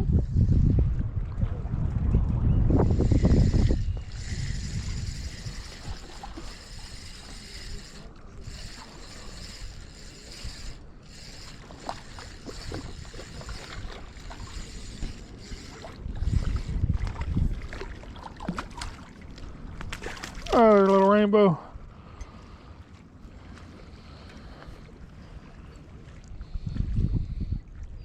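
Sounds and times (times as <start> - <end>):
wind rumble on microphone: 0.0 - 20.6, 23.3 - 28.0
fishing reel clicking: 2.8 - 17.3.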